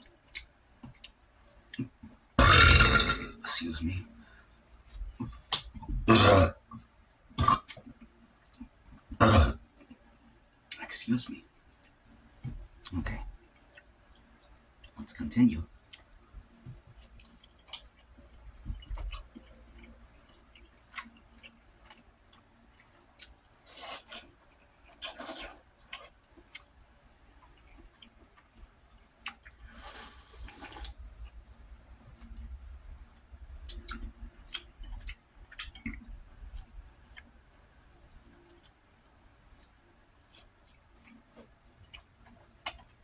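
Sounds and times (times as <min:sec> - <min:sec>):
person chewing: 0:18.8 - 0:26.7, 0:27.4 - 0:31.0, 0:33.2 - 0:37.3.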